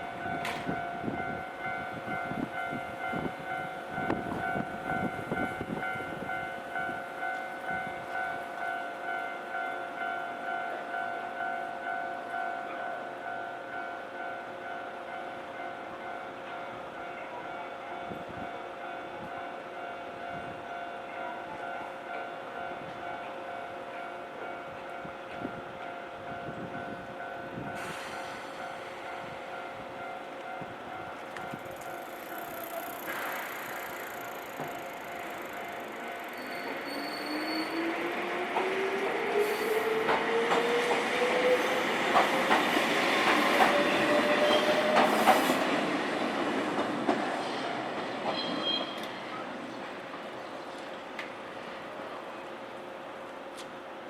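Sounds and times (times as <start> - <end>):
train knocking and rumbling: 0.0 - 10.8, 13.8 - 54.0
hiss: 27.8 - 28.6
level crossing alarm bell: 28.7 - 37.9.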